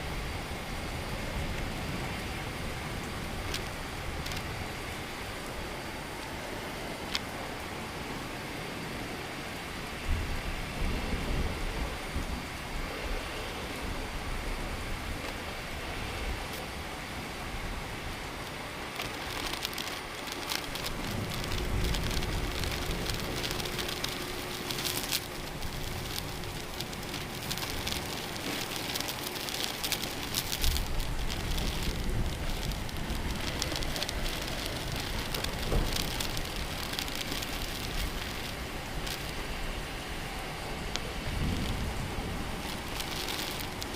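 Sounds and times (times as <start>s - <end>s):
heavy rain pattering: 0.0s - 43.9s
thunder rolling: 17.2s - 43.9s.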